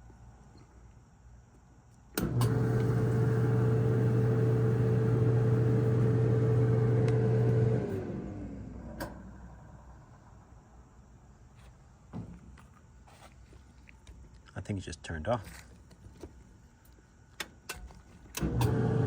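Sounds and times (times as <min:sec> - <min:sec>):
dryer motor click: 0:02.2 - 0:08.2, 0:17.4 - 0:19.0
dryer motor humming: 0:02.2 - 0:09.3, 0:18.3 - 0:19.0.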